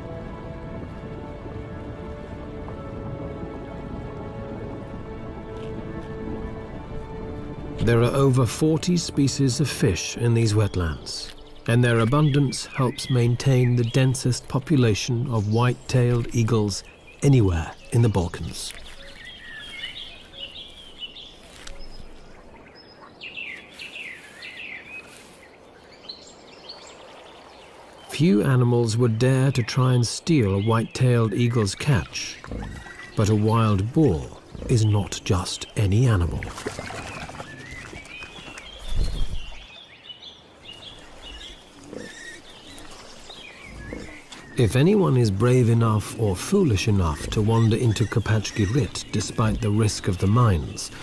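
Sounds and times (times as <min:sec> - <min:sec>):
birds chirping: 0:01.2 - 0:51.0
swooping bird calls: 0:10.5 - 0:28.2, 0:30.4 - 0:51.0.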